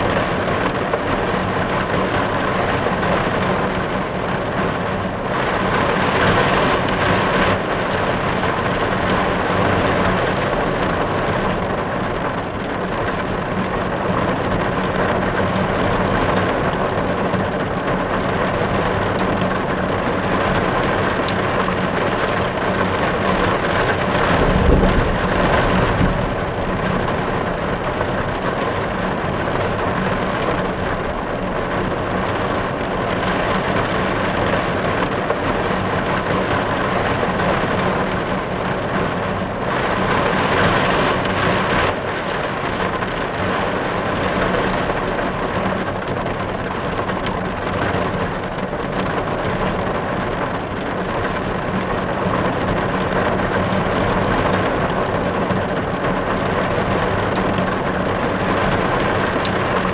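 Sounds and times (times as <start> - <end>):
rain drumming on car roof: 0.0 - 59.9
brief low rumble: 24.1 - 27.6.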